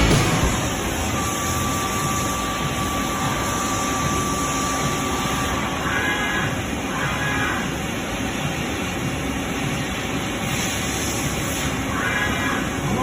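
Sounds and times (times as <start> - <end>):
thin high whine: 0.0 - 5.9
lathe whirring hum: 0.0 - 12.0.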